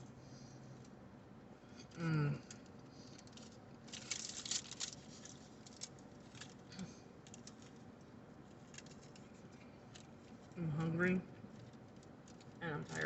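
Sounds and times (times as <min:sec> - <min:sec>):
food wrapper crackling: 0:01.8 - 0:13.0.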